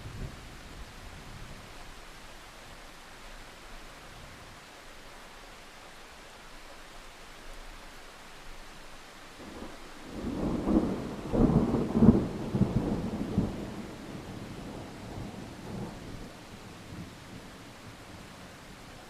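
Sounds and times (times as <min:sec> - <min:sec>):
steady rain: 0:00.0 - 0:19.0
thunder rumbling: 0:09.4 - 0:18.3.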